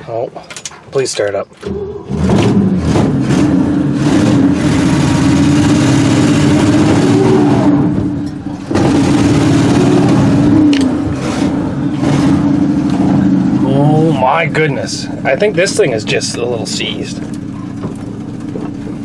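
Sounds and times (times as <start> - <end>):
pickup engine firing and revving: 1.7 - 16.2.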